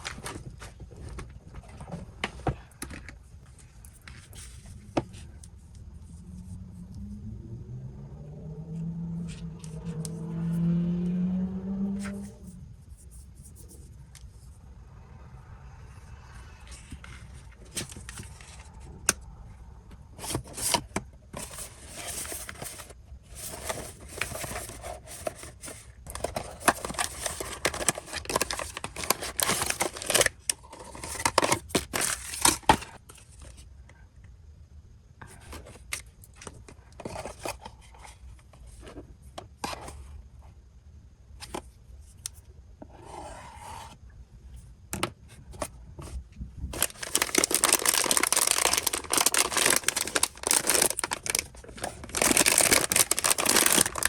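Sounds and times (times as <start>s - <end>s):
wrapper tearing and crinkling: 26.1s - 32.8s, 46.8s - 54.0s.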